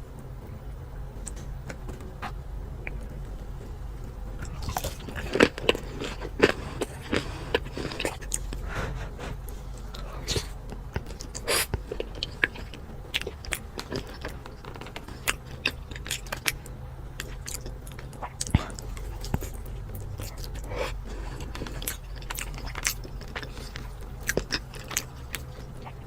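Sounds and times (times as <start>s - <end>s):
crunching crispy fried food: 4.4s - 8.6s, 9.8s - 26.0s.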